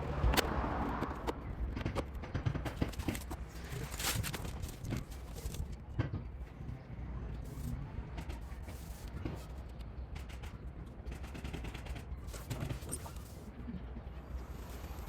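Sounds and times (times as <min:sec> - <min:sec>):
tool clicks and metal clatter: 0:00.3 - 0:06.2.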